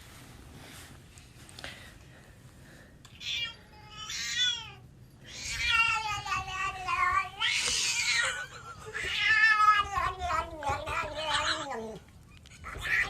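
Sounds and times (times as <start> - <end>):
cat meowing and yowling: 3.2 - 12.0.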